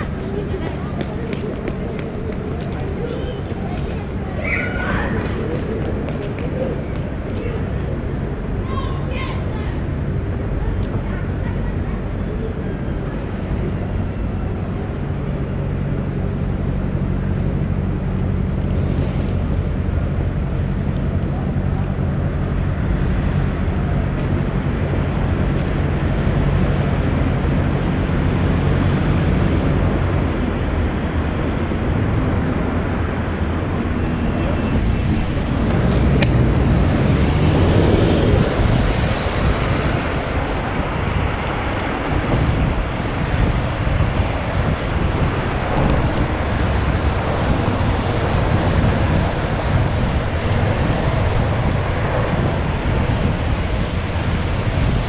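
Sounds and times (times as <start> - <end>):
low engine hum: 0.0 - 55.0
urban traffic: 0.0 - 55.0
wind buffeting microphone: 19.3 - 55.0.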